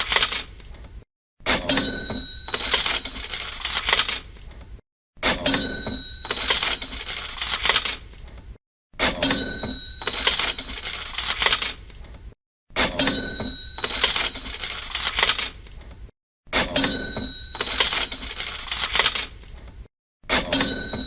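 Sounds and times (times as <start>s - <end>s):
cash register bell ding: 1.6s - 3.9s, 5.3s - 7.5s, 9.1s - 11.5s, 12.8s - 15.4s, 16.6s - 18.9s, 20.3s - 21.0s
coins jangling: 2.4s - 4.4s, 6.2s - 8.2s, 10.0s - 12.0s, 13.7s - 15.7s, 16.8s - 19.4s.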